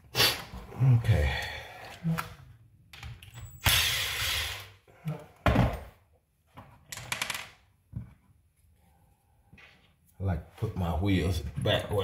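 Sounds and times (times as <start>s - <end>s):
thunk: 5.4s - 5.9s.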